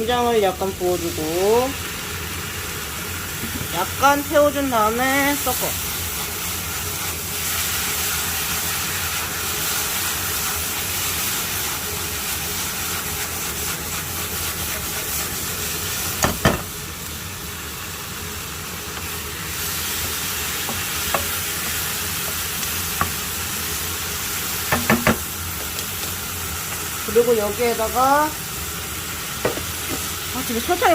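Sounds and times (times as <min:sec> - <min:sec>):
food sizzling in a frying pan: 0:00.0 - 0:30.9
utensil knocking against pan: 0:24.7 - 0:25.2.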